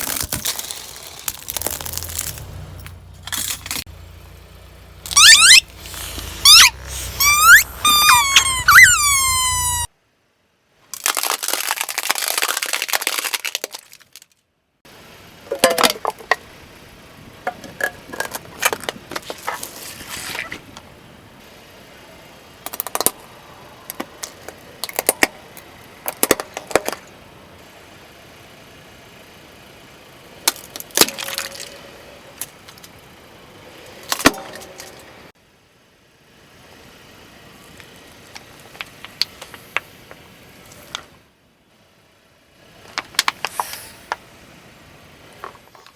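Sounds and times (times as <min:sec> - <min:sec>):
car tire crushing brittle objects: 0:00.0 - 0:04.3, 0:10.9 - 0:14.5, 0:17.5 - 0:20.9, 0:22.6 - 0:27.2, 0:30.3 - 0:35.2, 0:37.6 - 0:41.2, 0:42.8 - 0:44.3.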